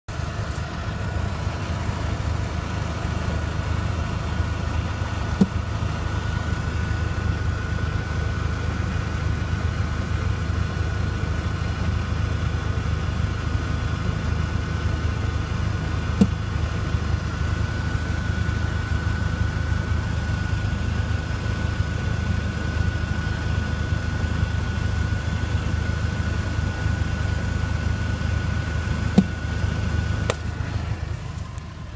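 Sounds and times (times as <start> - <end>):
car engine idling: 0.0 - 31.9
sharp pops under car: 5.3 - 5.7, 16.2 - 16.4, 29.1 - 29.4, 30.3 - 30.5.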